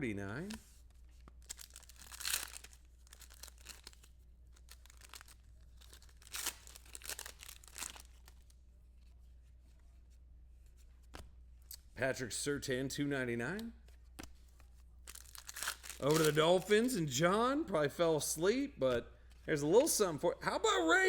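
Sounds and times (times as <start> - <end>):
cards and wrapper rustling: 0.4 - 8.6, 14.2 - 17.1.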